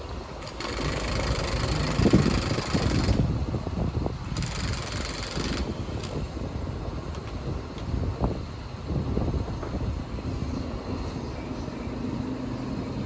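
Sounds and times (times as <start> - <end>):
engine low rumble: 0.0 - 13.0
engine knocking: 0.4 - 3.3, 4.4 - 6.2.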